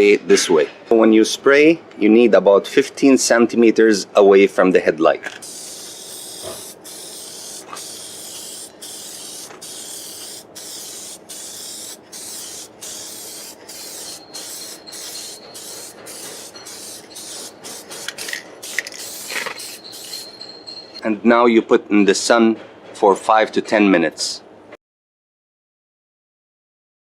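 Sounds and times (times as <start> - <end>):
spray nozzle hissing: 5.4 - 20.4.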